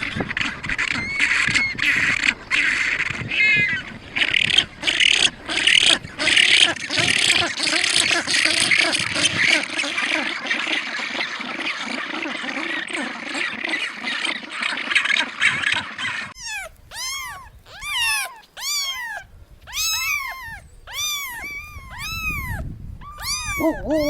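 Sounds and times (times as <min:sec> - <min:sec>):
dense chatter of calls: 0:00.0 - 0:24.0
kitten meowing: 0:00.8 - 0:02.3, 0:16.4 - 0:24.0.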